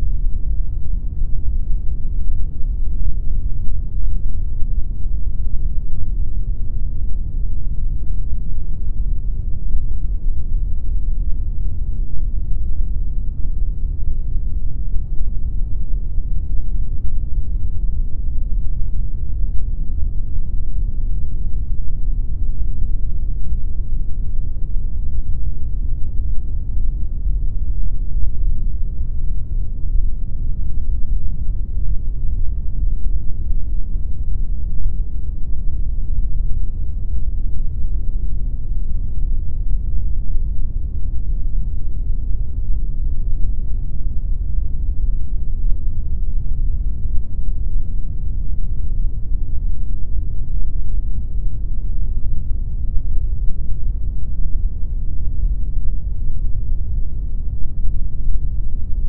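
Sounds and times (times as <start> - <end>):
deep pink noise hiss: 0.0 - 59.0.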